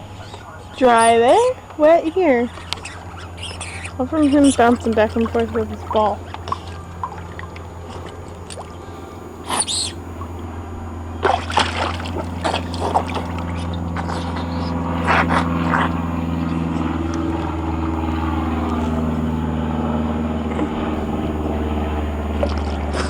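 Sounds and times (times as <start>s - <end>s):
motor vehicle engine running: 0.0s - 23.0s
water splashes and knocks: 11.2s - 14.2s.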